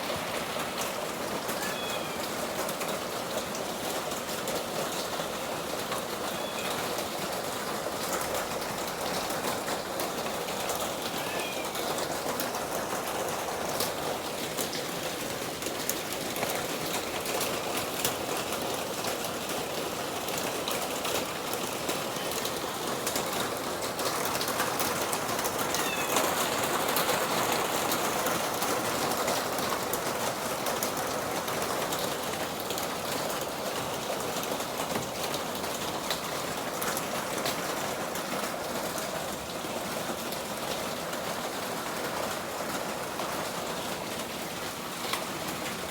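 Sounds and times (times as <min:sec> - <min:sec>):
rain pattering: 0:00.0 - 0:45.9
bird calling: 0:01.5 - 0:02.3, 0:06.3 - 0:06.9, 0:11.1 - 0:11.9, 0:25.6 - 0:26.6.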